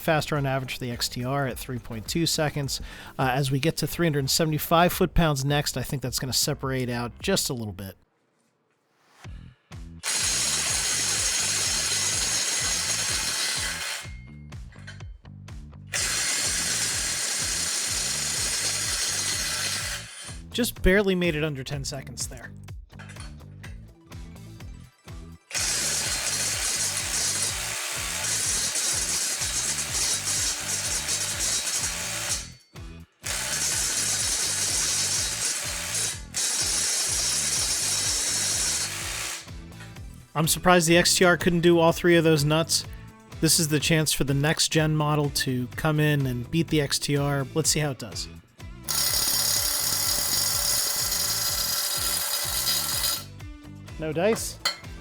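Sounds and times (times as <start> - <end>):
impact driver hammering: 54.6 - 55.0.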